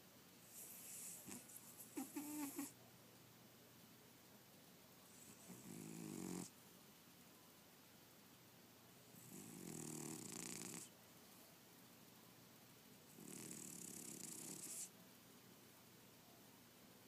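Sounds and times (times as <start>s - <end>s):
cat snoring: 0.5s - 2.7s, 5.2s - 6.5s, 9.2s - 10.9s, 13.1s - 14.9s.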